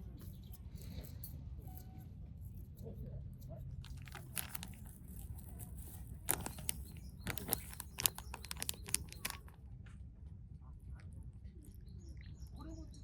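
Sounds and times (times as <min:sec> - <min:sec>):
sharp clicks and taps: 0:06.3 - 0:09.5.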